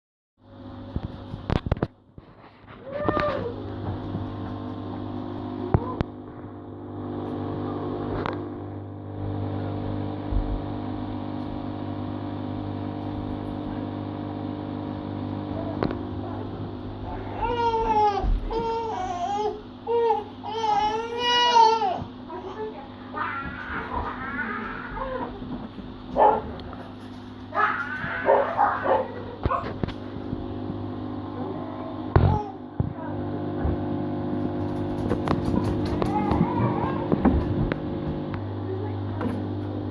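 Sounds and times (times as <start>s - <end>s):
water pump buzzing: 3.5s - 39.9s
dog yipping and whining: 27.5s - 29.7s.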